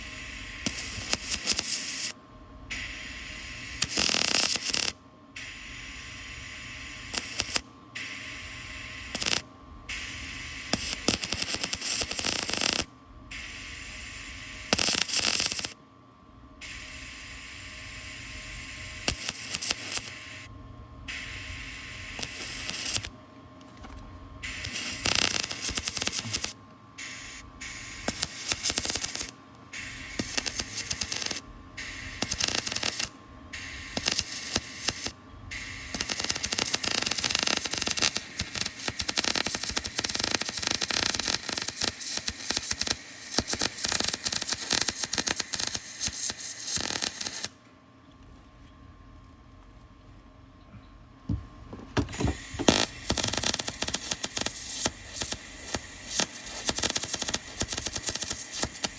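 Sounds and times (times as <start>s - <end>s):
welding arc crackling: 0.0s - 2.1s, 2.9s - 5.0s, 5.7s - 7.6s, 8.4s - 9.4s, 10.1s - 12.9s, 13.6s - 15.8s, 17.4s - 20.5s, 21.2s - 23.1s, 24.4s - 47.6s, 52.0s - 58.9s.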